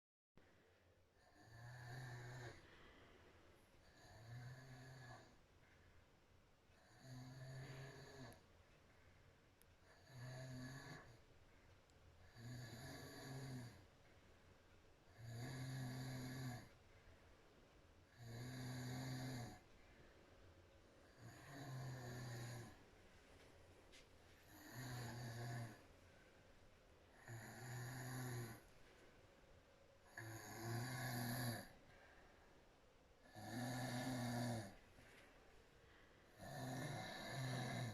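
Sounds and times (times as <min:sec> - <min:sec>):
quiet breathing: 0:00.4 - 0:37.9
woman snoring: 0:01.2 - 0:03.0, 0:03.8 - 0:05.4, 0:06.8 - 0:08.4, 0:09.8 - 0:11.2, 0:12.2 - 0:13.9, 0:15.1 - 0:16.8, 0:18.1 - 0:19.7, 0:21.0 - 0:22.8, 0:24.5 - 0:25.9, 0:27.1 - 0:28.7, 0:30.0 - 0:31.9, 0:33.2 - 0:34.8, 0:36.2 - 0:37.9.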